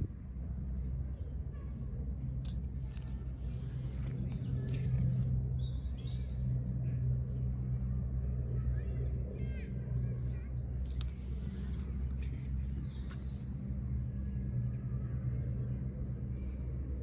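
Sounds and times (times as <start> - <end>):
small birds chirping: 0.0 - 6.5, 8.3 - 16.5
steady low hum: 0.0 - 17.0
faint clicks: 10.8 - 13.4.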